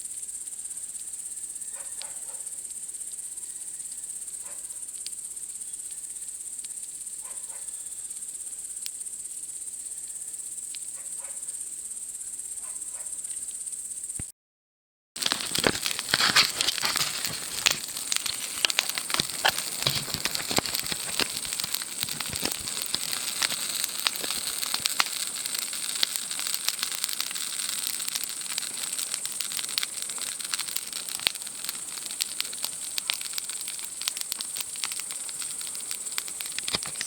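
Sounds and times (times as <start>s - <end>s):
night insects chirring: 0.0s - 14.2s, 15.2s - 37.0s
campfire crackling and popping: 15.2s - 37.0s.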